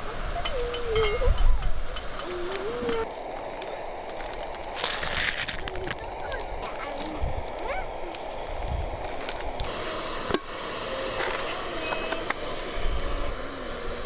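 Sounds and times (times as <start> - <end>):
wind gusting on microphone: 5.2 - 9.8.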